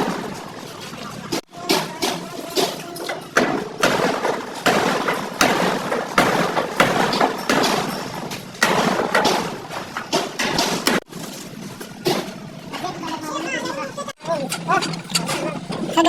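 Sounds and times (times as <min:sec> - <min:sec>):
hammer knocking on sheet metal: 0:03.4 - 0:11.0.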